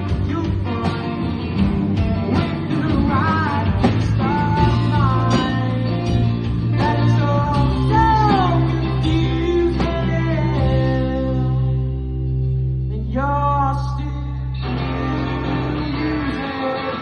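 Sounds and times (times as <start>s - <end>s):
rock song with bass and guitar: 0.0s - 17.0s.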